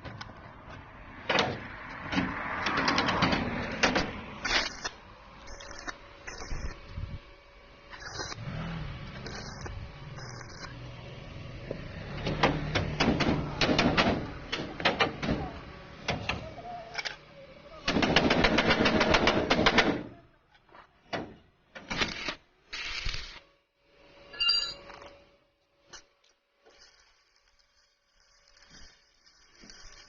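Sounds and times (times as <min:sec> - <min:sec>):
welding arc crackling: 0:03.6 - 0:07.0, 0:07.8 - 0:15.0, 0:21.9 - 0:23.4, 0:25.9 - 0:30.0.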